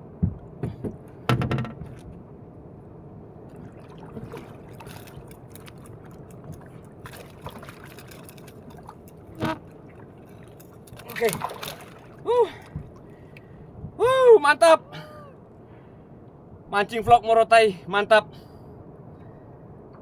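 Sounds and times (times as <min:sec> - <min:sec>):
knocks: 0:00.2 - 0:02.0
water splashing and trickling: 0:03.3 - 0:13.9.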